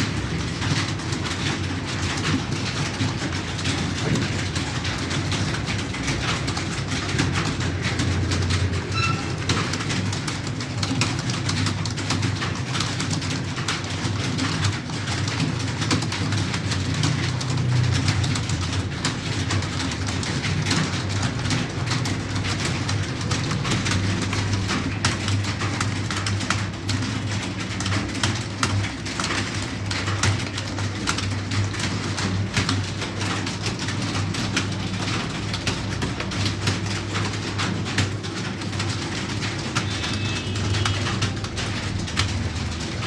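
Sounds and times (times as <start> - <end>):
keyboard typing: 0.0 - 43.0.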